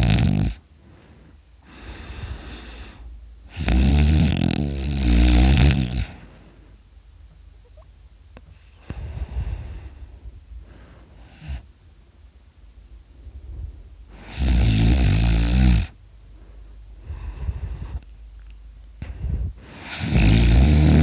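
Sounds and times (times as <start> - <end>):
person snoring: 0.0 - 0.6, 1.6 - 6.3, 14.1 - 16.0, 19.0 - 21.0.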